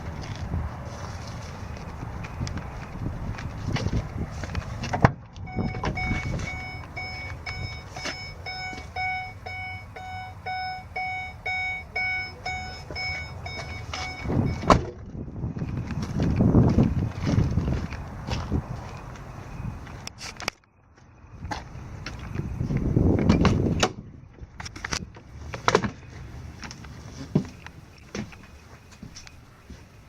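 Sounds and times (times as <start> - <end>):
handling noise: 0.0 - 19.1
electronic warning beeps: 5.5 - 14.7.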